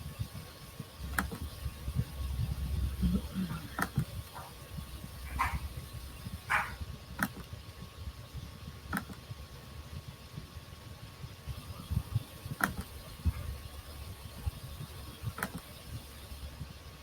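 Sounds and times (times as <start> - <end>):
low rumble: 1.0 - 7.0
computer mouse clicking: 1.1 - 1.4, 3.7 - 4.1, 7.2 - 7.5, 8.9 - 9.2, 12.6 - 12.9, 15.3 - 15.7.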